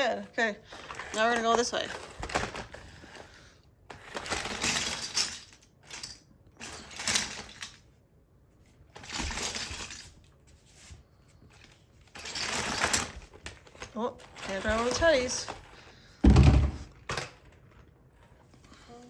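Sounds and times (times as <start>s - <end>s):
plastic bricks clattering: 3.9s - 7.9s, 9.0s - 10.2s, 12.1s - 17.7s.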